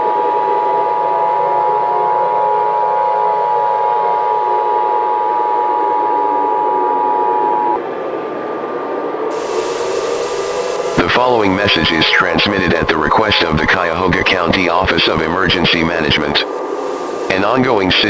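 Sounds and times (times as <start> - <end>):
low noisy hiss: 9.3 - 18.0.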